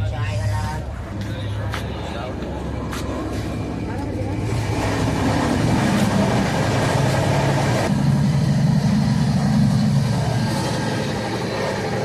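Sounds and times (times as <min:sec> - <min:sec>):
low rumble of a train: 0:00.0 - 0:12.0.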